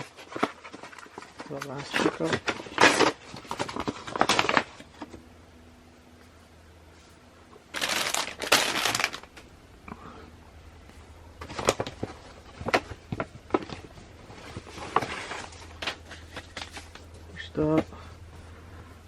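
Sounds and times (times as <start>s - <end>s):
packaging crinkling and snapping: 0.0s - 5.2s, 7.7s - 9.5s, 11.4s - 17.4s
packaging rustling: 0.0s - 5.2s, 7.7s - 9.5s, 11.4s - 17.4s.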